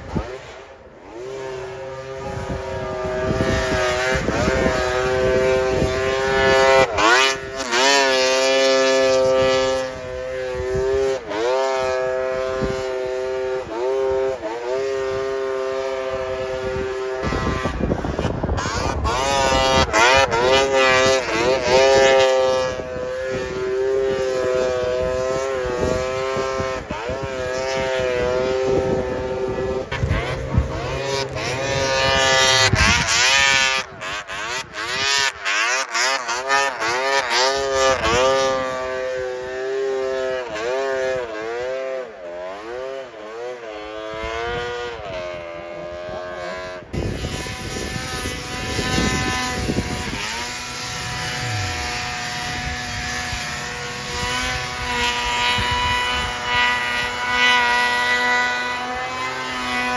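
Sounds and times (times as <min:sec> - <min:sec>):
snowmobile engine revving: 0:00.0 - 0:59.9.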